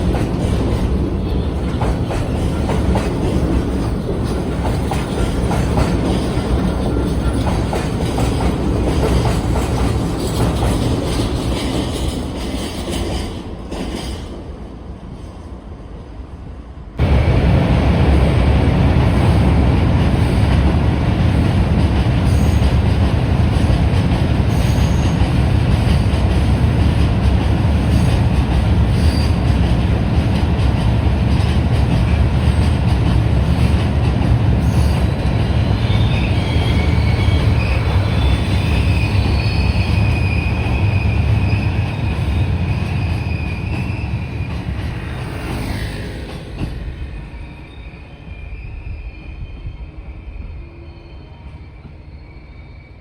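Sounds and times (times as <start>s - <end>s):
freight train wheels rumbling: 0.0s - 53.0s
high-pitched wheel squeal: 35.6s - 53.0s.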